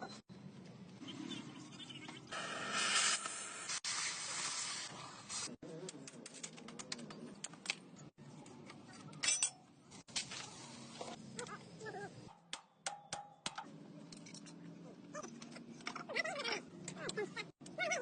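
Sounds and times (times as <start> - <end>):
hiss of noise: 2.3 - 5.6.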